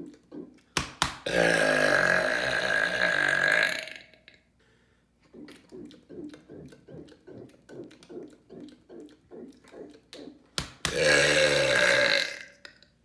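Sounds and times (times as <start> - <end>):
man burping loudly: 1.2 - 4.4, 10.9 - 12.7.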